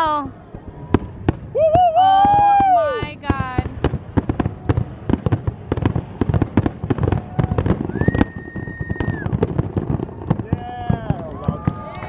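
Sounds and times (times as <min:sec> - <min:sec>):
fireworks bangs and crackles: 0:00.0 - 0:12.0
high steady whistle: 0:07.9 - 0:09.3.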